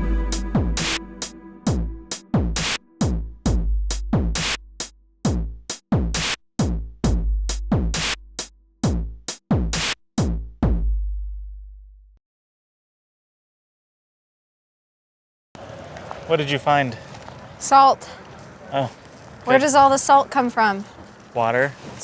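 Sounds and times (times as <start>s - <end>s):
electronic music with drum beat: 0.0s - 10.9s.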